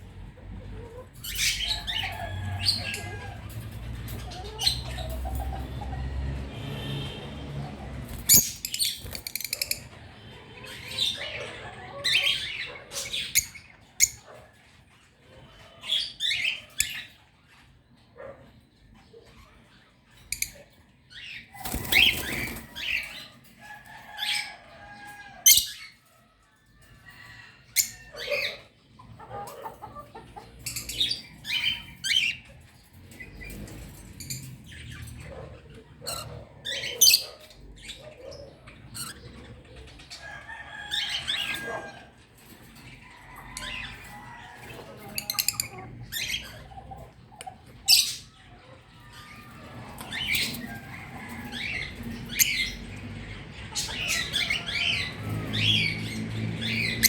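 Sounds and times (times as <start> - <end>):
birds chirping: 0.0 - 57.0
wings flapping: 21.5 - 22.9.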